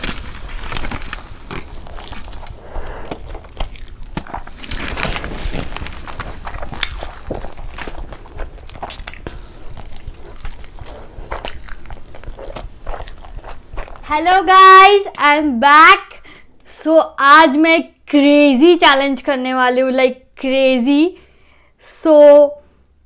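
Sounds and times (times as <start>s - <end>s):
person chewing food: 0.0s - 14.3s.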